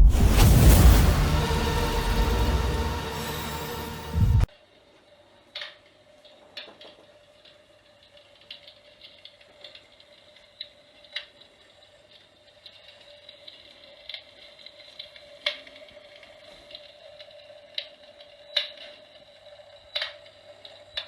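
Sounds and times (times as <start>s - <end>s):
music burst: 0.0s - 4.5s.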